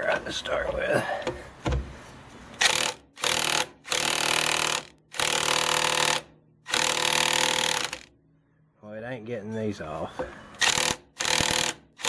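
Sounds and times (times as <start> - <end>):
impact wrench hammering: 2.6 - 8.1, 10.6 - 12.0.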